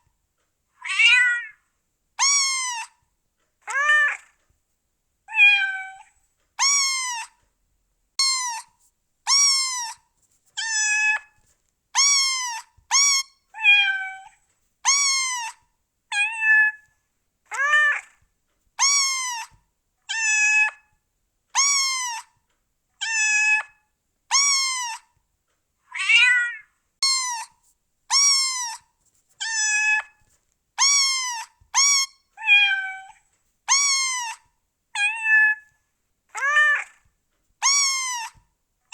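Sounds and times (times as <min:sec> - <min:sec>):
cats meowing: 0:00.8 - 0:01.6, 0:02.2 - 0:03.0, 0:03.7 - 0:04.4, 0:05.3 - 0:07.4, 0:09.3 - 0:10.0, 0:10.6 - 0:11.3, 0:12.0 - 0:16.9, 0:17.5 - 0:18.2, 0:18.8 - 0:20.8, 0:21.6 - 0:22.3, 0:23.0 - 0:25.2, 0:25.9 - 0:30.2, 0:30.8 - 0:38.4.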